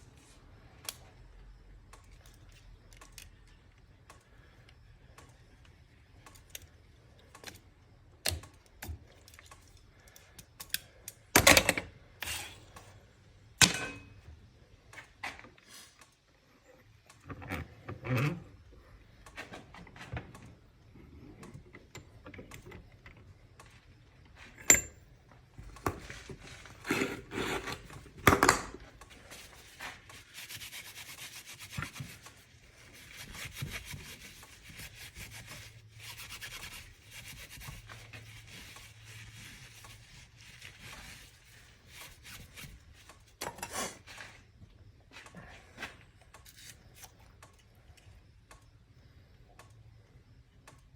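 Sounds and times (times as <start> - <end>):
clicks and metallic knocks: 13.6 - 14.3, 24.5 - 25.0
scraping and rubbing on cable: 29.2 - 43.1.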